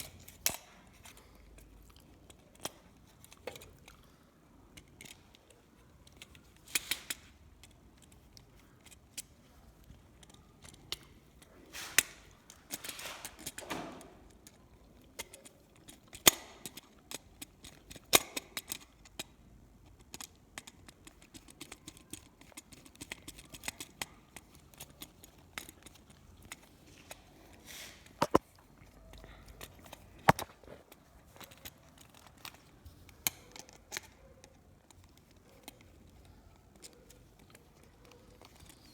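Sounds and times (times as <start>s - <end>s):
sharp clicks and taps: 28.2s - 38.7s.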